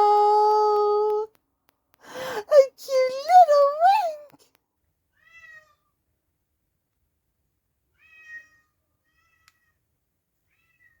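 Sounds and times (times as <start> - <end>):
cat meowing: 5.2 - 5.9, 8.0 - 9.7.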